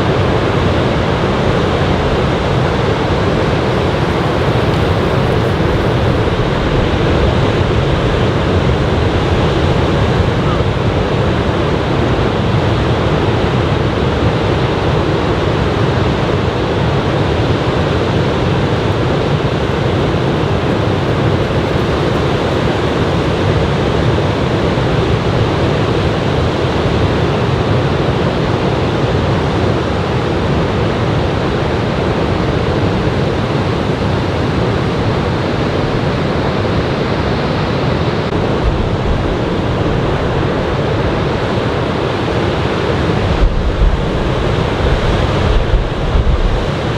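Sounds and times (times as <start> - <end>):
waves breaking on beach: 1.0 - 7.6, 17.8 - 24.0.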